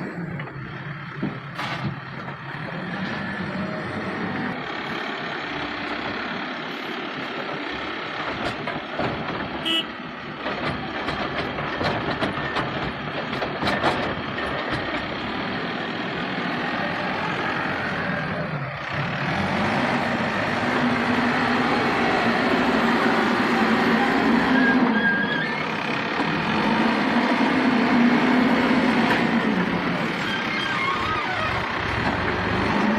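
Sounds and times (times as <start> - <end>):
diesel engine running hard: 0.0 - 32.9
metallic clanks and knocks: 10.3 - 15.2.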